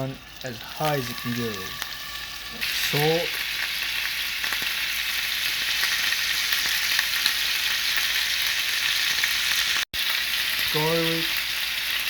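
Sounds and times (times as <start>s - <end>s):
meat sizzling in a skillet: 0.0s - 12.0s.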